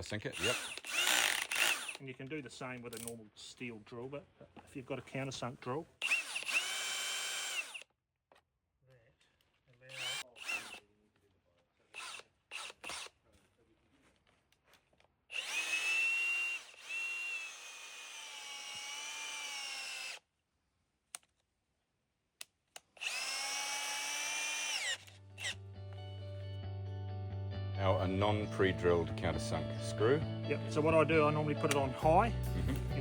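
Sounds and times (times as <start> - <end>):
power drill boring holes: 0.0 - 2.0, 6.0 - 7.9, 9.9 - 10.9, 11.9 - 13.1, 15.3 - 20.2, 22.8 - 25.6.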